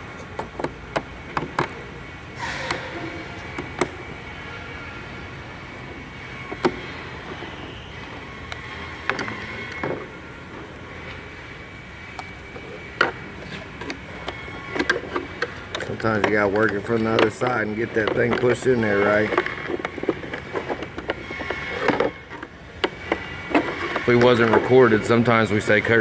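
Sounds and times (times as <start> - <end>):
steady background hum: 0.0 - 26.0
plastic clicks and knocks: 0.2 - 1.9, 3.6 - 4.0, 6.4 - 10.2, 12.1 - 26.0.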